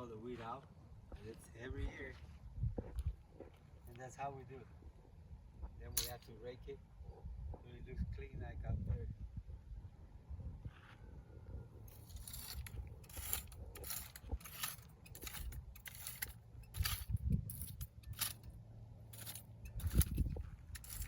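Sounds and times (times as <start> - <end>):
rake scraping dry ground: 11.8 - 21.0.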